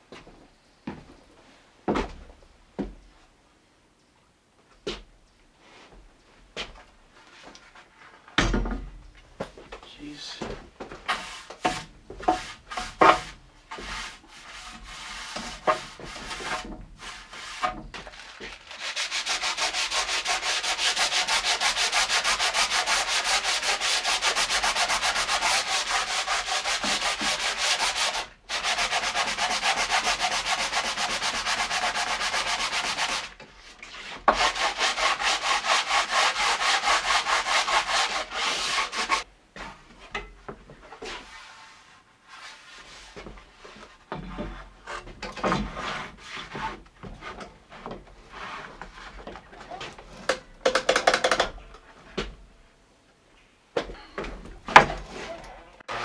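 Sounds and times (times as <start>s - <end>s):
hand tool rasping wood: 11.1s - 33.4s, 34.3s - 39.2s
knocks and clatter: 50.0s - 51.7s.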